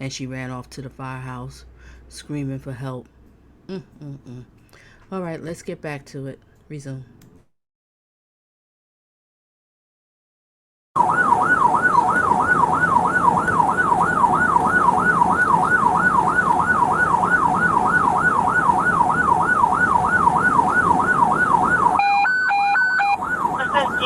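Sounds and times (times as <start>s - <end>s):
low rumble of moving car: 11.0s - 24.0s
police siren yelping: 11.0s - 24.0s.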